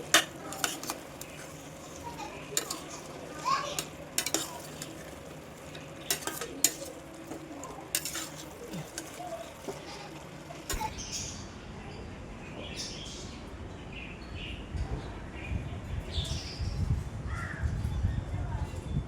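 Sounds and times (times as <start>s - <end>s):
metal spoon clinking on pot: 0.0s - 3.1s, 3.7s - 9.8s.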